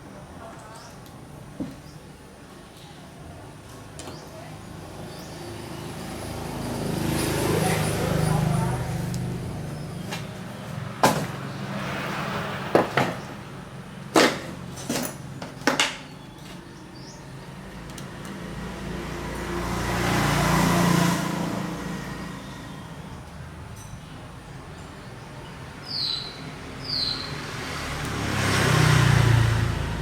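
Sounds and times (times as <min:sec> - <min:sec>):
sharp knocks: 0:11.0 - 0:11.5.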